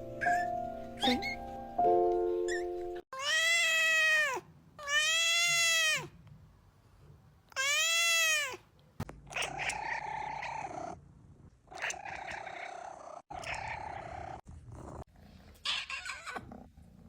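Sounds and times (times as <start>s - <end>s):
cat meowing: 2.5s - 6.1s, 7.5s - 8.6s, 9.3s - 10.7s.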